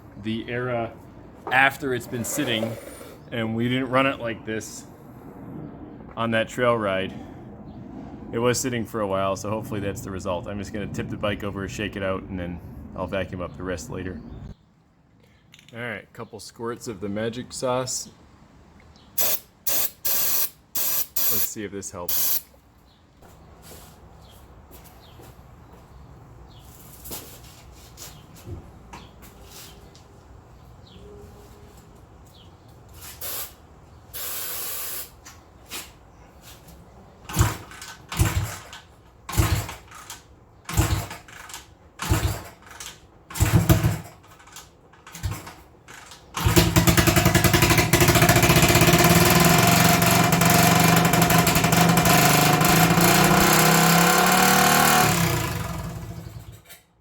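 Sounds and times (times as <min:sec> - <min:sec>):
motorcycle engine start attempts: 0:37.2 - 0:56.8
motorcycle engine revving high: 0:46.4 - 0:56.6.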